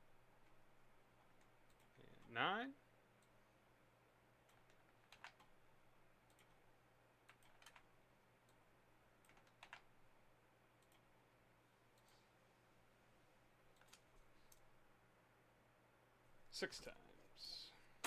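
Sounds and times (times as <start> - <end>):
faint low hum: 0.0 - 18.0
faint computer clicks: 1.2 - 2.4, 4.4 - 5.6, 6.2 - 6.6, 7.2 - 8.6, 9.2 - 9.9, 10.8 - 11.1, 13.7 - 14.7.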